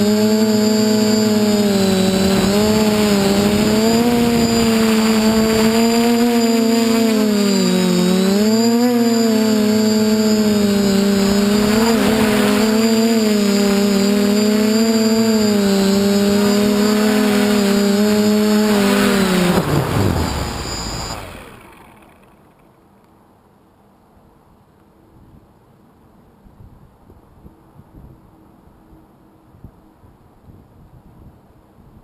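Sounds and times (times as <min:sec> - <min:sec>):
quadcopter motors buzzing: 0:00.0 - 0:22.7.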